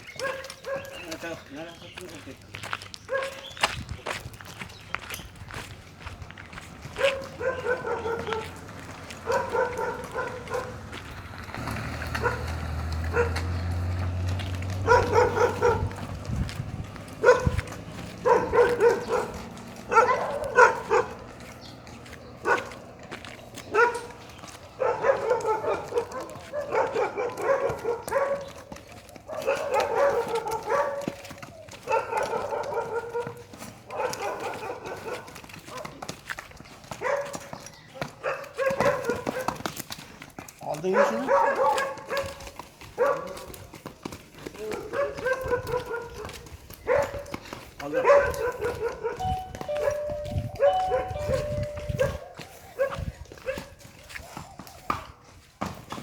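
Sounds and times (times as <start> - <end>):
dog barking and whining: 7.0 - 8.6, 9.2 - 10.8, 12.2 - 12.4, 13.1 - 13.5, 14.8 - 16.0, 17.2 - 21.3, 22.4 - 22.7, 23.6 - 35.8, 37.0 - 37.4, 38.0 - 39.5, 40.9 - 42.4, 43.0 - 43.5, 44.7 - 47.3, 47.9 - 55.0.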